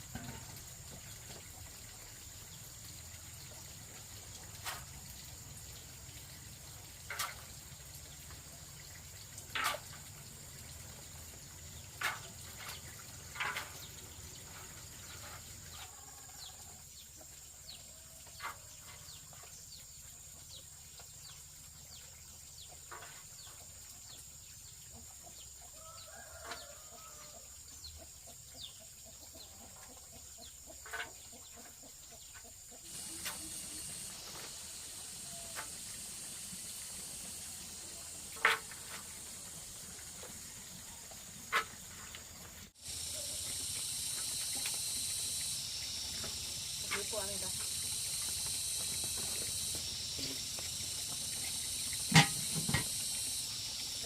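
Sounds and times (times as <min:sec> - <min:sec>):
steady high-pitched hiss: 0:00.0 - 0:54.0
chickens clucking: 0:27.9 - 0:42.3, 0:42.9 - 0:53.7.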